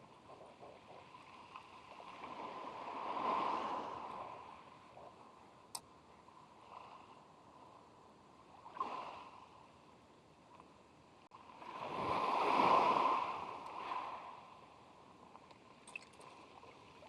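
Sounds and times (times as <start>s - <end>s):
sea wave breaking: 1.4s - 4.6s, 11.5s - 14.6s.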